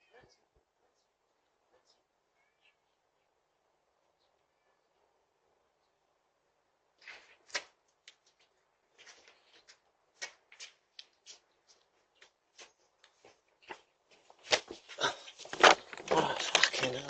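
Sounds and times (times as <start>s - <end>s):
light clicks and rustles: 7.0s - 17.0s.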